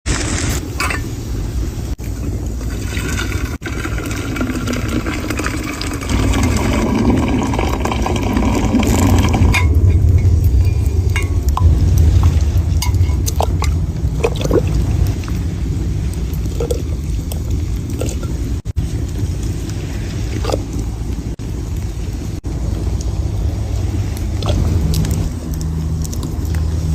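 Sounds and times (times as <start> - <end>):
low rumble: 0.4 - 26.9
water pouring into vessel: 2.6 - 18.6.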